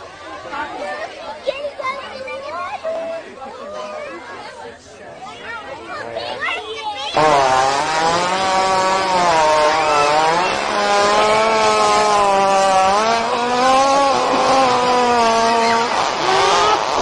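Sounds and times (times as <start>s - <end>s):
animal fart: 7.2s - 17.0s.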